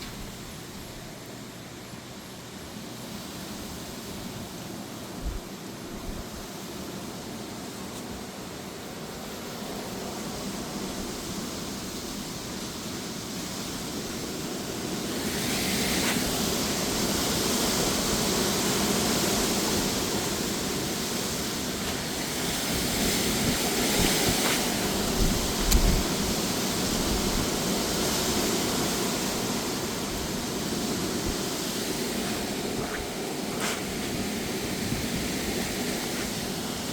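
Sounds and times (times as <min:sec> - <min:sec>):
gusty wind: 0:05.2 - 0:06.6, 0:14.0 - 0:36.9
rain: 0:08.4 - 0:36.9.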